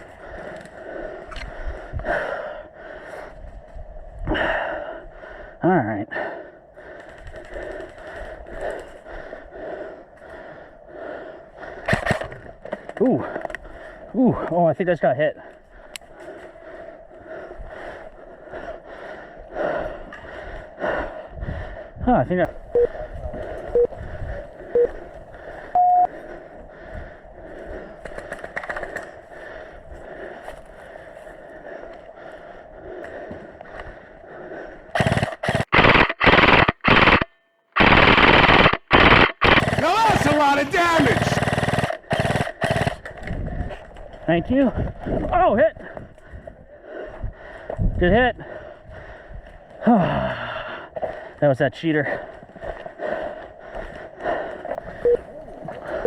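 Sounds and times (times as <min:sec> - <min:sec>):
person breathing heavily: 0:00.0 - 0:14.6, 0:15.3 - 0:37.0, 0:44.6 - 0:56.0
quick run of clicks: 0:35.0 - 0:44.1
radio static hiss: 0:35.7 - 0:39.7.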